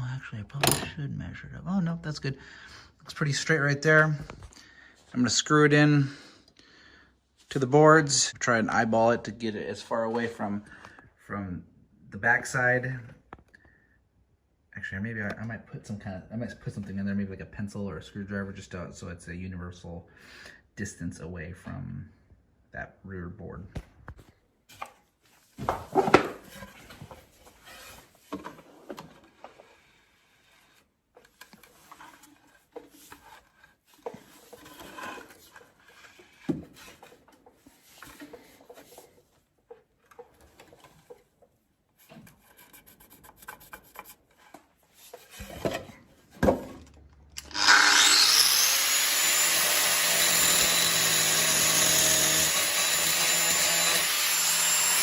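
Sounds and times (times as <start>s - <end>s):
power tool motor whining: 47.4s - 55.0s.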